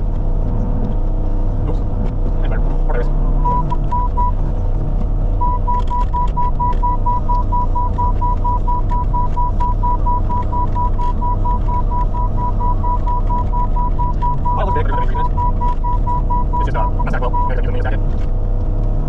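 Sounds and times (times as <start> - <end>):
diesel engine running: 0.0 - 19.0
warning beeper short beeps: 3.3 - 4.4, 5.4 - 17.9.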